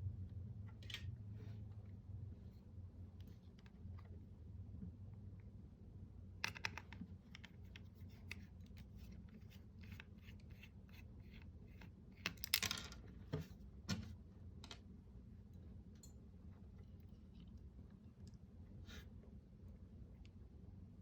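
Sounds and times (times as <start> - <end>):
computer mouse plastic clicks: 6.4 - 8.5.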